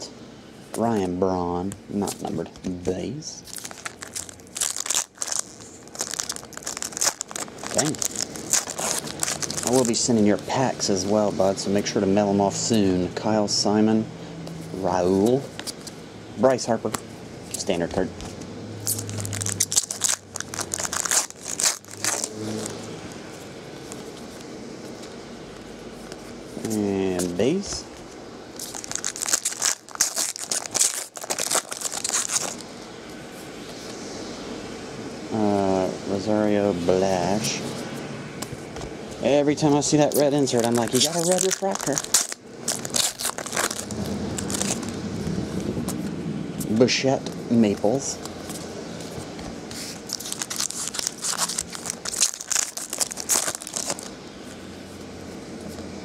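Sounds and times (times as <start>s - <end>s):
plastic wrapper tearing and crinkling: 3.4s - 10.7s, 18.8s - 22.8s, 28.6s - 32.7s, 39.7s - 46.0s, 49.7s - 54.2s.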